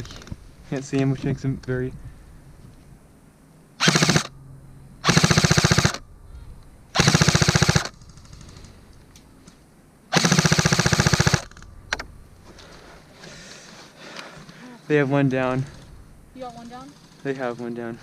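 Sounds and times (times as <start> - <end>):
airsoft rifle firing bursts: 3.8 - 4.3, 5.0 - 6.0, 7.0 - 8.6, 10.1 - 11.6.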